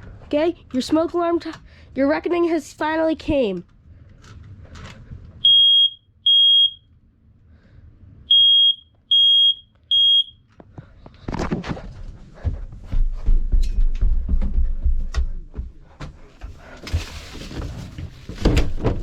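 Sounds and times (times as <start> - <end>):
smoke alarm beeping: 5.4 - 6.9, 8.3 - 10.5.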